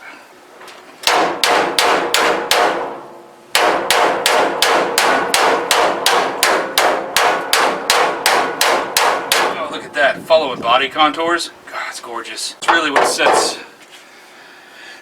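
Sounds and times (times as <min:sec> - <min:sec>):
hammer beating sheet steel: 0:01.0 - 0:09.8, 0:12.7 - 0:13.6.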